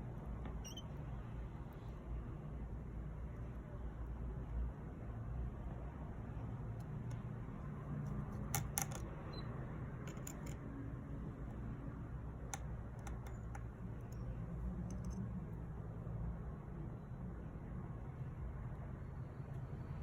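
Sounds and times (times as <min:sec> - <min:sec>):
small tools clicking and tapping: 0:06.8 - 0:07.4, 0:08.0 - 0:09.2, 0:10.0 - 0:10.7, 0:12.4 - 0:15.4.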